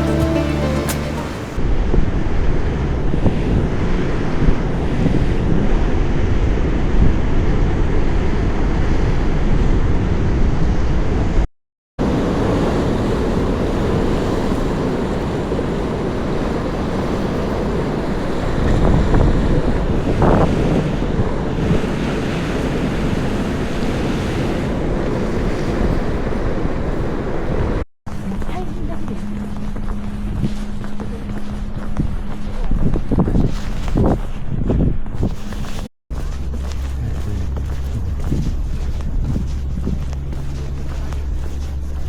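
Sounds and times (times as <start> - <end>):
wind buffeting microphone: 1.2 - 11.4, 12.0 - 42.0
sea waves washing: 12.0 - 27.8.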